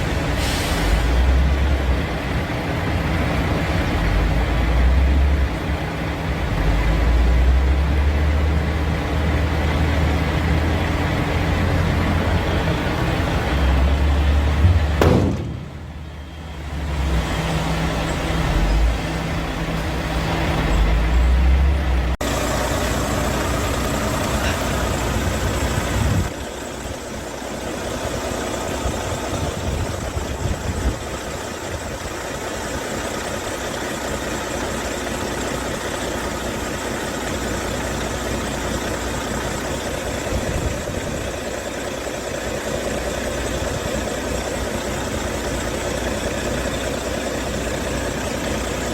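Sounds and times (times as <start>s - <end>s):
diesel truck engine idling: 0.0s - 48.9s.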